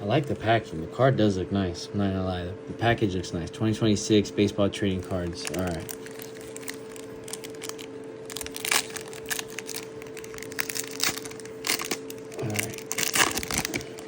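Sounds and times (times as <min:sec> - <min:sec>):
faint steady hum: 0:00.0 - 0:14.0
foil pack crinkling: 0:04.9 - 0:14.0.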